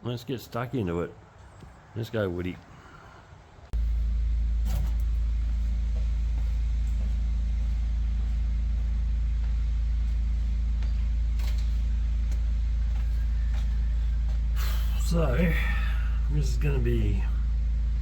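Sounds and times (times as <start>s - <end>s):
car engine idling: 3.7s - 18.0s.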